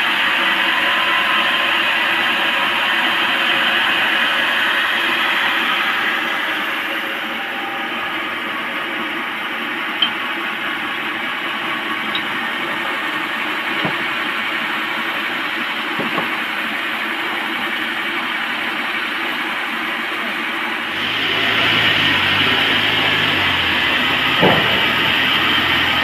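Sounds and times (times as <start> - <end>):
sawmill saw running: 0.0 - 26.0
faint knocks: 15.9 - 16.4.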